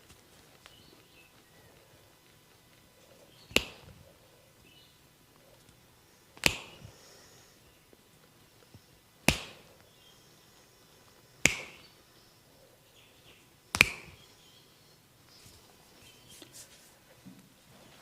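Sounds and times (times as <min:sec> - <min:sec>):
sharp snaps: 0:02.7 - 0:04.1, 0:05.6 - 0:07.2, 0:07.9 - 0:10.1, 0:11.0 - 0:12.0, 0:13.7 - 0:14.3.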